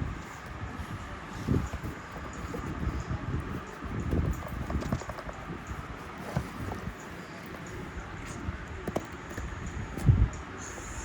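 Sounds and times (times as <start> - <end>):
cardboard box rustling: 4.1 - 7.9.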